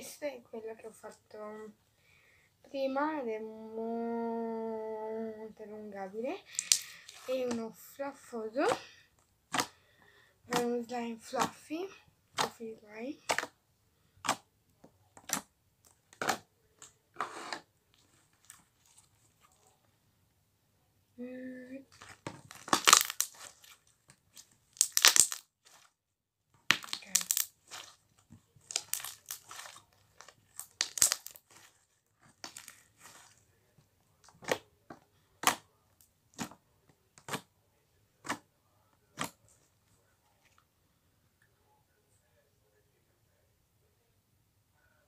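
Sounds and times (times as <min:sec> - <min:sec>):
slime squishing and crackling: 0:06.4 - 0:07.7, 0:09.5 - 0:09.8, 0:13.2 - 0:13.5, 0:15.2 - 0:15.5, 0:16.1 - 0:16.9, 0:21.9 - 0:26.0, 0:26.6 - 0:33.6, 0:34.2 - 0:36.6, 0:39.2 - 0:39.5
slime air pockets popping: 0:21.9 - 0:23.7, 0:24.3 - 0:25.8, 0:26.6 - 0:28.0, 0:28.6 - 0:33.3, 0:35.4 - 0:35.6.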